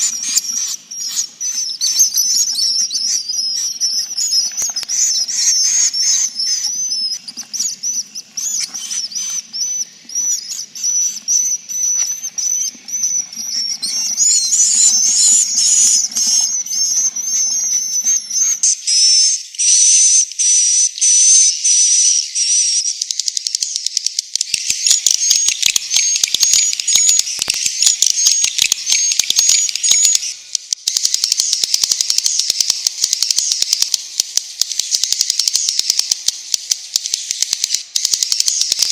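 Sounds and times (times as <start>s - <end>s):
swiftlets twittering chorus: 0.0s - 19.8s, 24.6s - 38.9s
rapid clicking: 30.6s - 38.9s.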